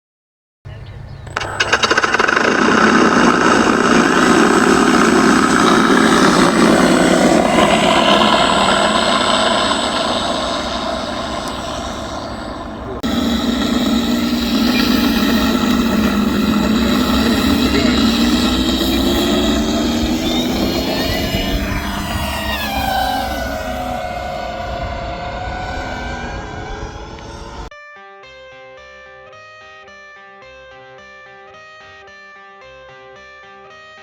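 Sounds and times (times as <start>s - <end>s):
propeller noise: 1.0s - 27.7s
simulated piston engine sound: 1.2s - 27.7s.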